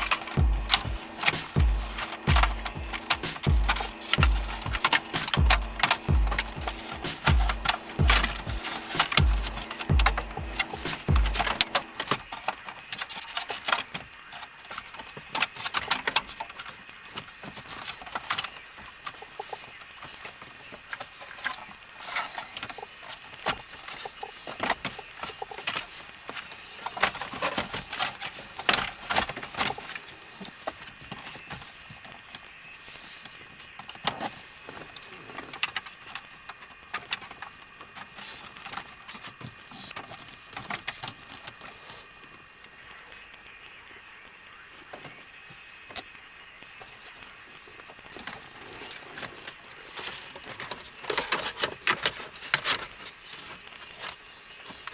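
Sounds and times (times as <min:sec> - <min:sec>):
small hard parts clicking and rattling: 0:00.0 - 0:19.1.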